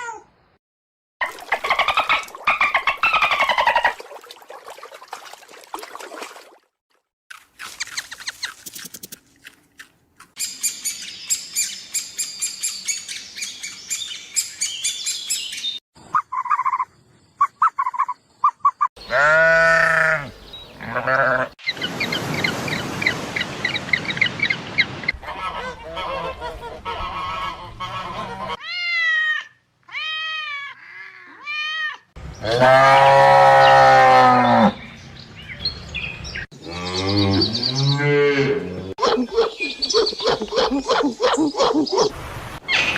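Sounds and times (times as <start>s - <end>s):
goats or sheep bleating: 19.0s - 21.6s.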